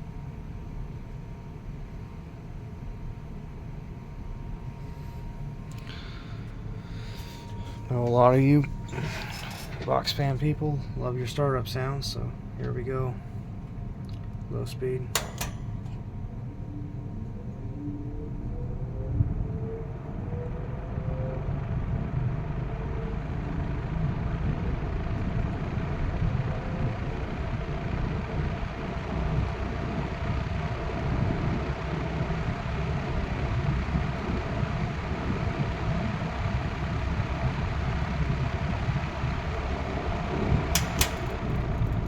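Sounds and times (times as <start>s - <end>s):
box fan motor hum: 0.0s - 42.0s
fan air rushing: 1.4s - 17.3s, 21.5s - 42.0s
sharp clicks: 15.1s - 16.0s, 40.7s - 41.6s.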